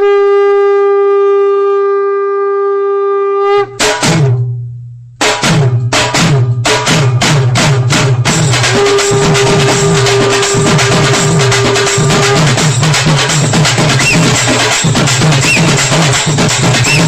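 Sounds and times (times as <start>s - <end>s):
conch shell blown: 0.0s - 3.8s, 8.6s - 12.9s, 13.9s - 14.6s, 15.4s - 16.0s, 16.7s - 17.0s
deep drum strokes: 5.3s - 17.0s.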